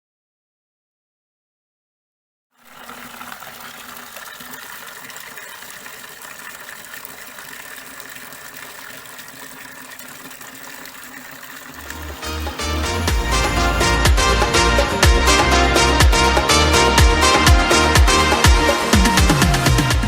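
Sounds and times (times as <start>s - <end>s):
water running from a tap: 2.6s - 14.0s.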